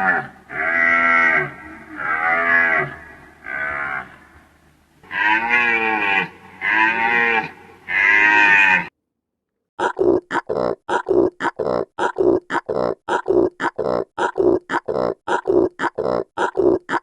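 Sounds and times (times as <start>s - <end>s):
deer bellowing calls: 0.0s - 8.9s
deer grunting: 9.8s - 17.0s.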